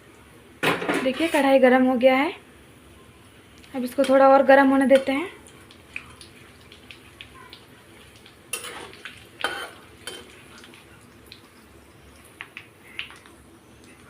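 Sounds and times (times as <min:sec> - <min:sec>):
frying oil crackling: 0:03.2 - 0:14.0.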